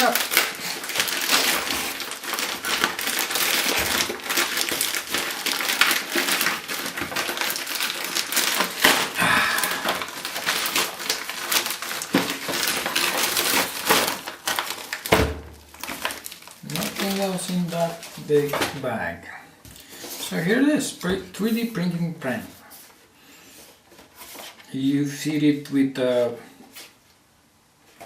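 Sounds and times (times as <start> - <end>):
packaging bag crinkling and tearing: 0.0 - 18.8.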